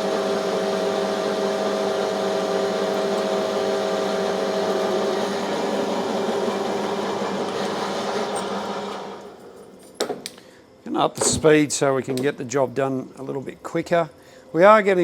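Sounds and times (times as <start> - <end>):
metal lathe humming: 0.0 - 9.5.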